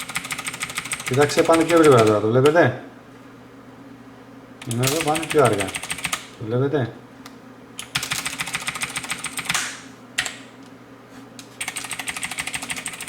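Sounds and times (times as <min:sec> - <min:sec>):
mechanical keyboard keys clicking: 0:04.6 - 0:06.2, 0:11.6 - 0:13.0.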